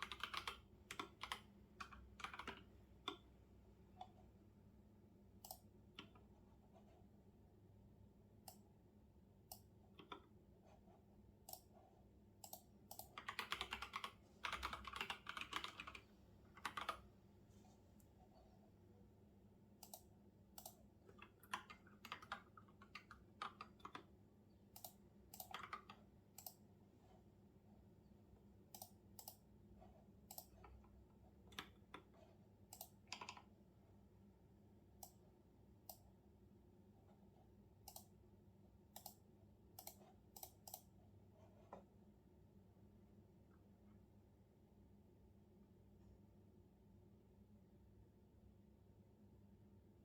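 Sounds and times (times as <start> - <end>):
computer keyboard keystrokes: 0.0 - 3.2, 9.5 - 10.3, 12.4 - 17.0, 19.8 - 24.1, 24.7 - 26.6, 28.7 - 29.4, 30.3 - 30.8, 32.7 - 33.5, 37.9 - 38.1, 39.8 - 40.9
low room hum: 0.0 - 50.0.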